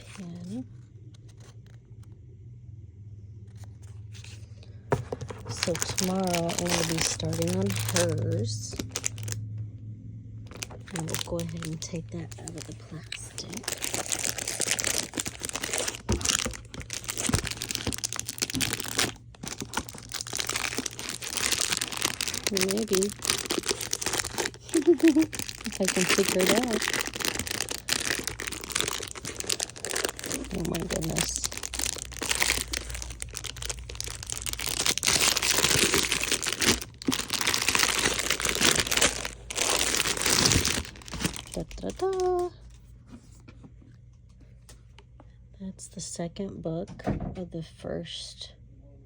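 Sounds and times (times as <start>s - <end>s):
plastic shrink-wrap crinkling: 5.0s - 9.4s, 10.5s - 42.8s.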